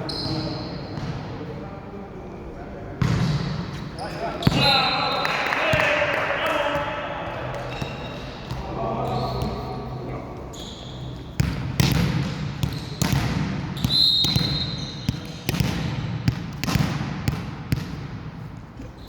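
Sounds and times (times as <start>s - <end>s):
referee's whistle: 0.0s - 0.8s, 4.0s - 5.4s, 13.8s - 15.1s
voices: 4.0s - 10.9s.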